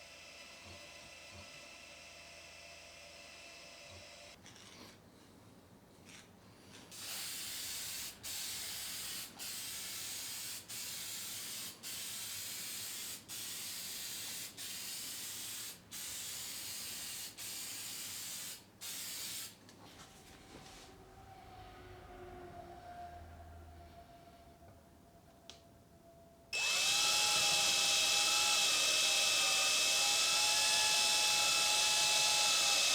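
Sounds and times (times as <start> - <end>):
lacquer spray hissing: 7.0 - 19.6.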